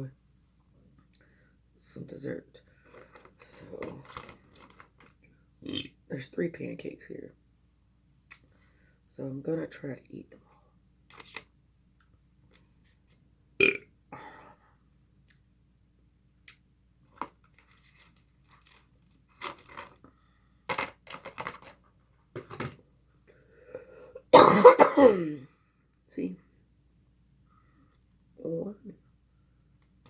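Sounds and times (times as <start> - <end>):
person belching: 13.6 - 13.8, 24.4 - 25.4.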